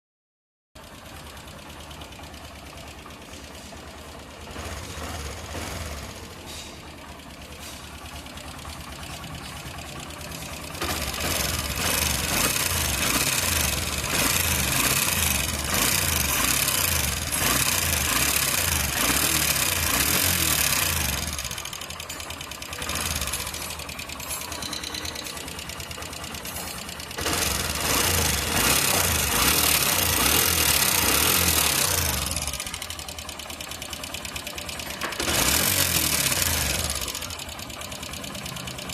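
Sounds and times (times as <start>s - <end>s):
motorcycle engine running: 0.8s - 38.9s
rapid valve rocker ticking: 8.0s - 24.2s, 25.0s - 38.9s.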